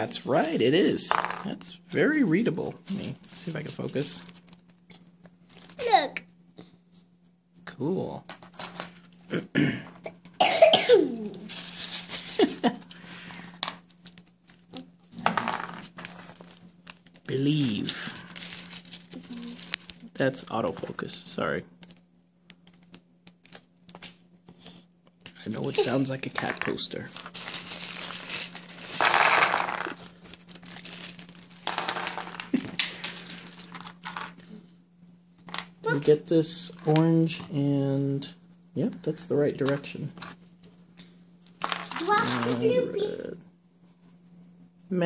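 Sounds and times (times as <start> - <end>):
plastic keycaps rattling in a bag: 11.5 - 12.9, 25.7 - 34.3.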